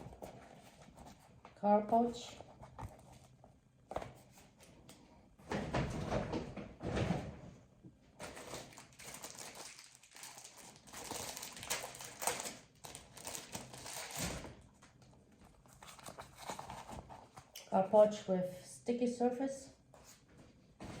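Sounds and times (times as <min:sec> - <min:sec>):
packaging rustling and crinkling: 0:08.2 - 0:17.5.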